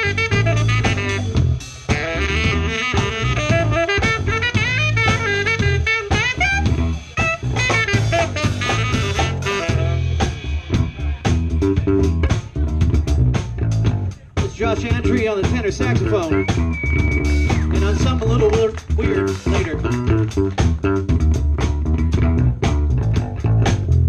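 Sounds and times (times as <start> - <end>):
saxophone line: 0.0 - 12.1, 14.8 - 20.6
jazz-funk band playing: 0.0 - 24.0.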